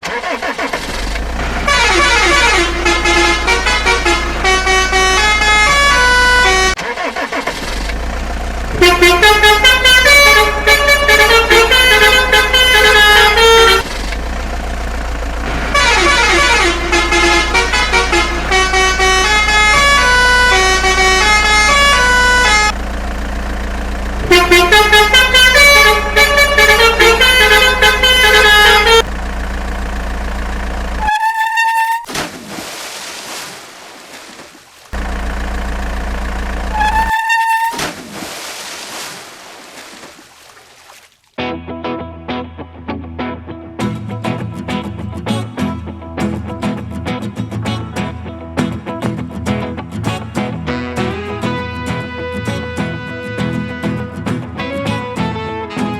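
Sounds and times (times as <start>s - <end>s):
electronic horn-like melody: 1.4s - 6.8s, 8.7s - 13.9s, 15.5s - 22.8s, 24.2s - 29.1s, 31.0s - 32.1s, 36.6s - 38.0s, 50.6s - 55.9s.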